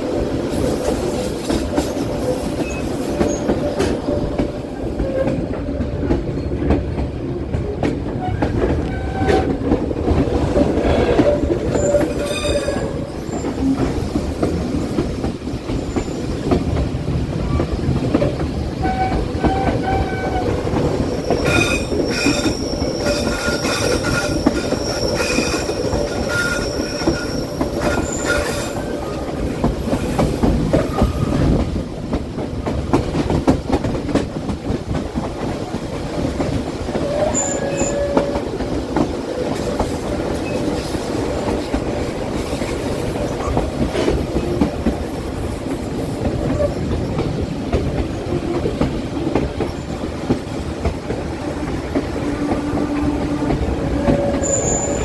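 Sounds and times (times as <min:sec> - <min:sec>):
train wheels rumbling on rails: 0:00.0 - 0:55.0
train wheels squealing: 0:00.6 - 0:03.9, 0:10.8 - 0:14.6, 0:15.8 - 0:16.4, 0:18.8 - 0:29.3, 0:30.7 - 0:31.6, 0:37.0 - 0:38.5, 0:40.3 - 0:41.2, 0:52.6 - 0:55.0.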